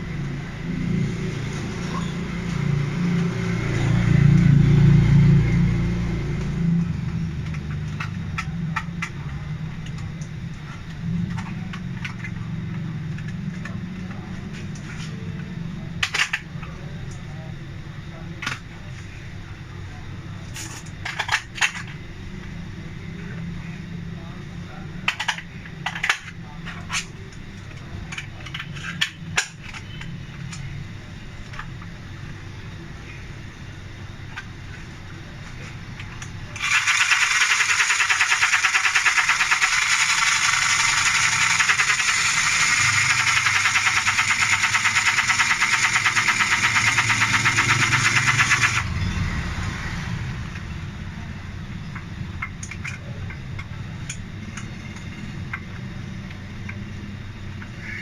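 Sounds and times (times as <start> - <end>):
low hum: 0.0 - 36.7
sewing machine rattling: 36.6 - 48.9.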